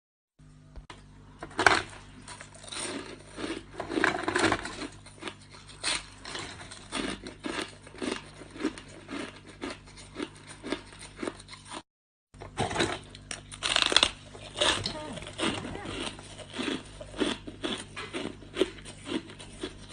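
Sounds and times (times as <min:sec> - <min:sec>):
faint low hum: 0:00.4 - 0:11.1
ice being chewed: 0:01.7 - 0:11.8, 0:12.5 - 0:19.9.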